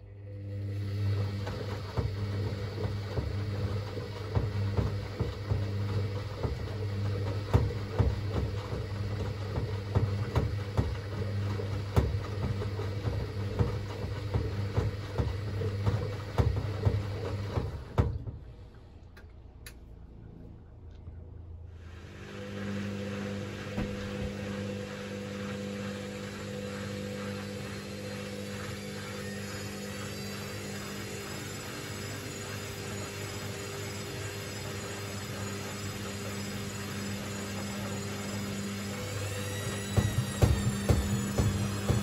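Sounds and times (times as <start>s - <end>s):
washing machine drum humming: 0.4s - 18.6s, 22.4s - 42.0s
washing machine knocking and banging: 1.2s - 18.6s, 23.6s - 24.8s, 37.1s - 42.0s.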